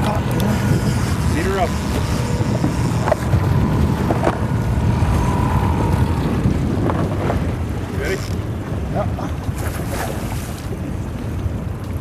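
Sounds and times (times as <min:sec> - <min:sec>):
steady low rumble: 0:00.0 - 0:12.0
wind buffeting microphone: 0:00.0 - 0:12.0.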